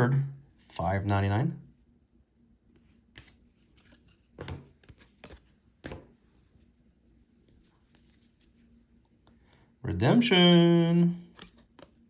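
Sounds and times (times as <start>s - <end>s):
cards slapping and rustling: 2.7s - 6.4s, 7.5s - 8.7s, 11.3s - 12.0s.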